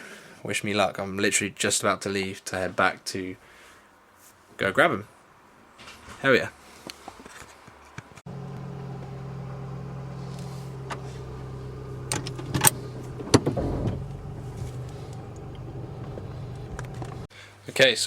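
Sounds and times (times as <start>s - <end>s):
car engine running: 8.3s - 17.3s
deep low rumble: 8.4s - 17.3s.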